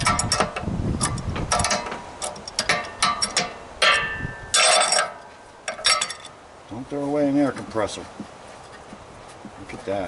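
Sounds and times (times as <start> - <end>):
hand tools clanking on metal: 0.0 - 6.4.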